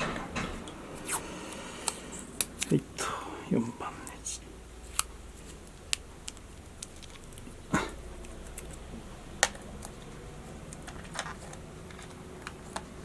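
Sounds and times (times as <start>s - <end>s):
small parts clicking and tapping: 4.9s - 7.5s, 8.2s - 13.0s.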